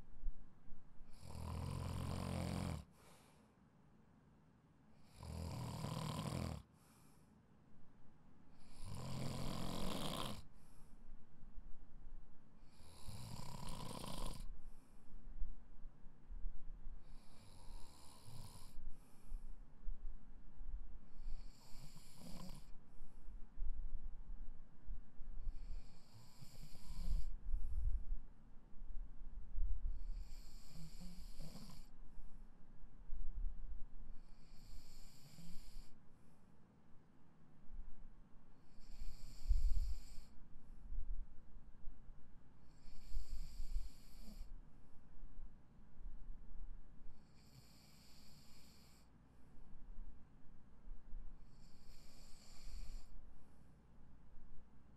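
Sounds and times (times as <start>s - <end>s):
soft breath: 1.0s - 3.8s, 6.5s - 7.6s, 9.8s - 13.3s, 14.4s - 28.9s, 29.6s - 32.5s, 33.2s - 36.6s, 38.5s - 41.2s, 42.6s - 44.9s, 47.1s - 49.6s, 50.9s - 53.7s
person snoring loudly: 1.2s - 2.9s, 5.2s - 6.6s, 8.7s - 10.4s, 12.7s - 14.5s.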